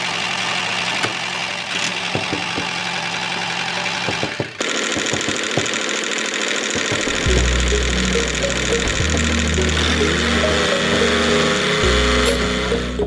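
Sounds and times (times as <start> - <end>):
engine running steadily: 0.0 - 13.0.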